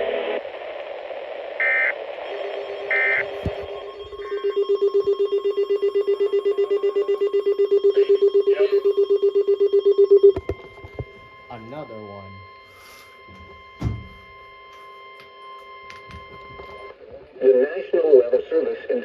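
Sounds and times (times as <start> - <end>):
faint steady warning tone: 1.6 - 17.0
digital data tone bursts: 2.5 - 10.4, 11.4 - 14.3
alarm beeping rapidly: 2.9 - 14.7.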